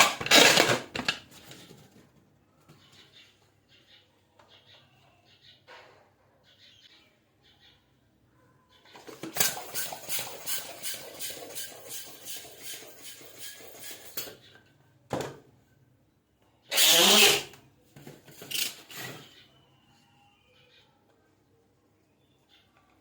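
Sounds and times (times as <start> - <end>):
balloon pump air pulses: 9.2 - 14.2.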